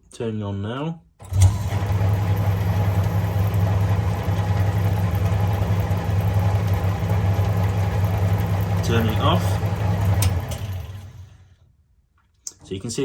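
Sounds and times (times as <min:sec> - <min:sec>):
tumble dryer motor humming: 0:01.2 - 0:11.6.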